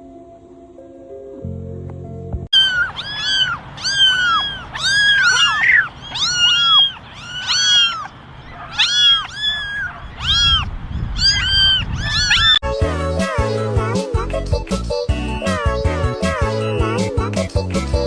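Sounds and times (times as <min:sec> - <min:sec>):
cat meowing: 0:02.5 - 0:12.6.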